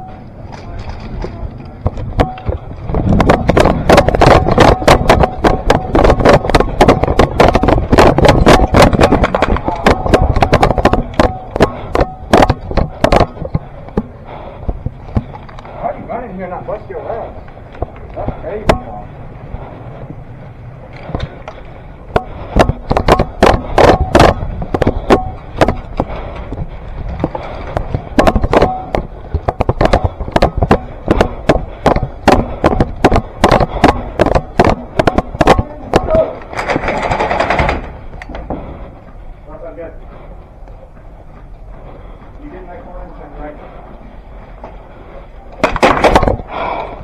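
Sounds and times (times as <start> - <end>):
airsoft guns firing: 30.0 - 38.0.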